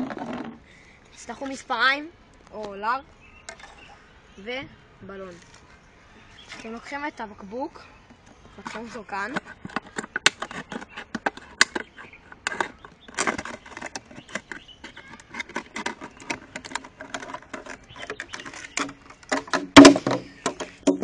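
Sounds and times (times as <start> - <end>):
plastic bottle crackling and snipping: 8.2 - 21.0.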